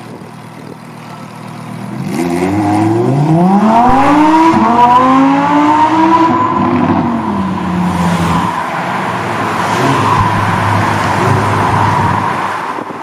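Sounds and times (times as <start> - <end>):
sports car engine droning: 0.0 - 13.0.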